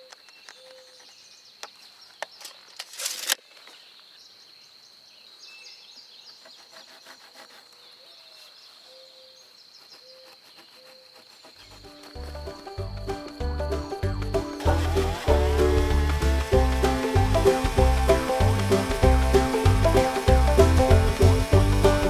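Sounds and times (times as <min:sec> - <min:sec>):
loud rustling: 0:11.2 - 0:22.0.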